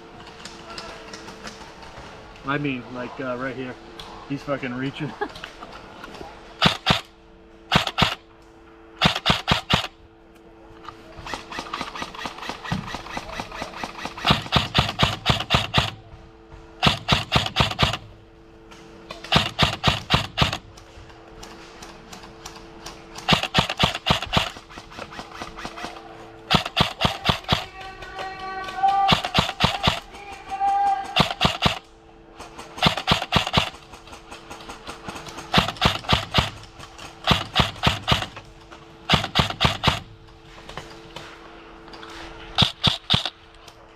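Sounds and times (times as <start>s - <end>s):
airsoft gun firing bursts: 6.6s - 8.2s, 9.0s - 10.0s, 11.2s - 16.1s, 16.8s - 18.1s, 19.1s - 20.8s, 22.1s - 38.4s, 39.0s - 40.2s, 42.6s - 43.4s
faint shots crackling: 23.1s - 27.8s, 29.0s - 30.4s, 31.1s - 38.4s.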